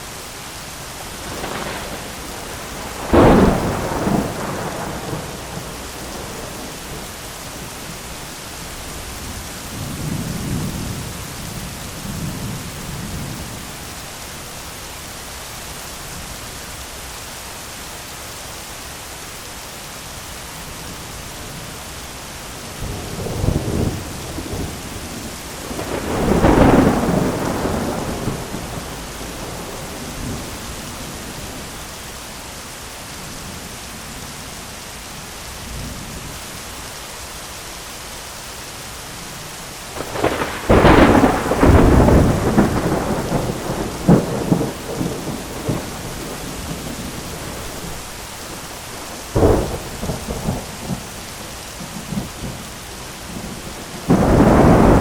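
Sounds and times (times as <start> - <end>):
heavy rain: 0.0 - 55.0
thunder: 1.2 - 7.1, 22.8 - 31.6, 40.0 - 51.2, 53.3 - 55.0.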